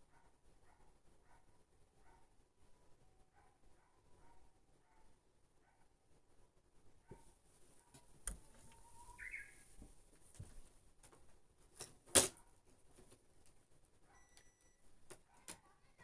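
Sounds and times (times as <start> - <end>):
bird whistling song: 8.8 - 9.6.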